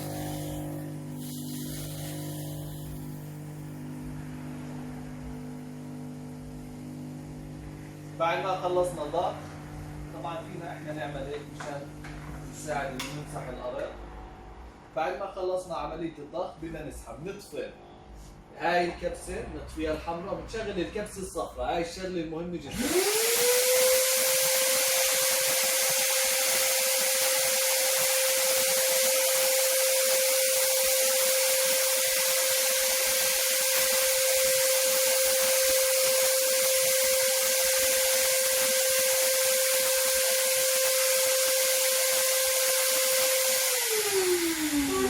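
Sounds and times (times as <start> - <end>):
vacuum cleaner motor whine: 0.0 - 10.4, 22.7 - 45.0.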